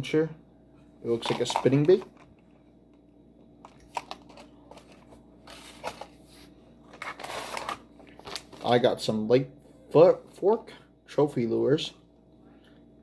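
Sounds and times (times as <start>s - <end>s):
plastic packaging crinkling: 1.2s - 2.2s, 3.7s - 8.9s.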